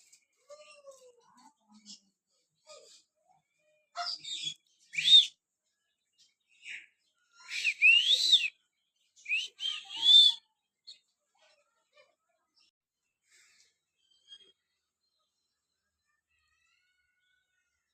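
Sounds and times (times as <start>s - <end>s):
bird shrill whistled calls: 4.3s - 5.3s, 7.4s - 8.5s, 9.3s - 10.4s.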